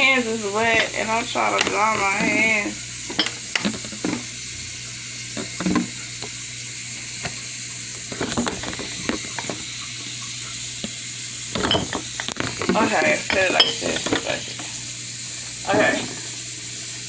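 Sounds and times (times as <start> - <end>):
sizzling hiss: 0.0 - 17.0
clicks and knocks of handling: 3.1 - 4.3, 5.4 - 6.4, 8.0 - 9.8, 11.6 - 14.4.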